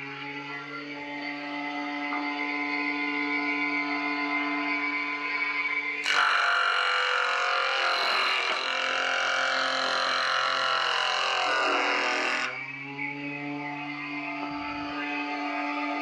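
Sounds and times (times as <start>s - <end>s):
jointer planing wood: 6.0s - 14.1s.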